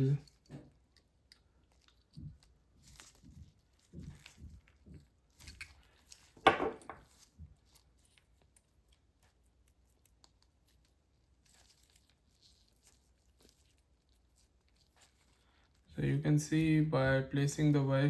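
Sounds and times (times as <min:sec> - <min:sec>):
rustling scrape: 0:10.6 - 0:15.9.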